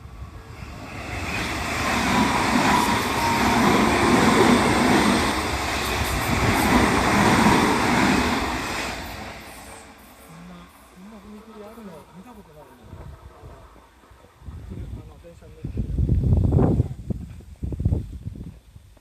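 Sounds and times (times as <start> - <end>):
electric train passing: 0.0 - 15.4.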